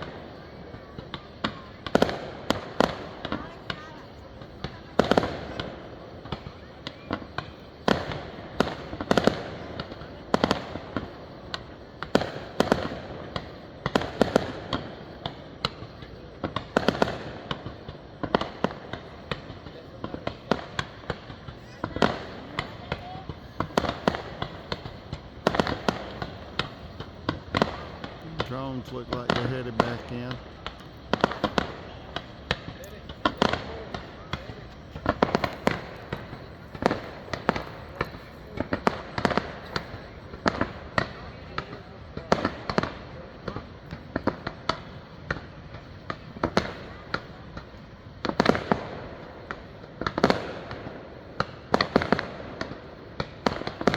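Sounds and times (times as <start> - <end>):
fireworks cracking and popping: 0.0 - 53.9.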